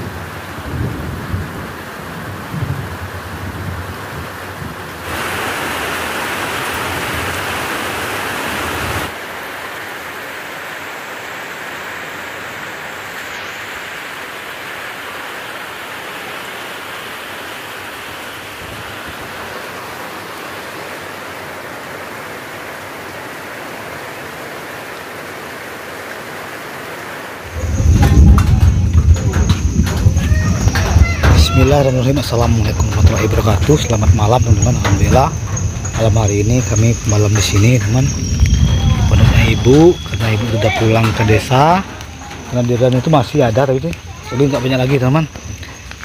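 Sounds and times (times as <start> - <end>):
heavy rain pouring: 0.0 - 46.0.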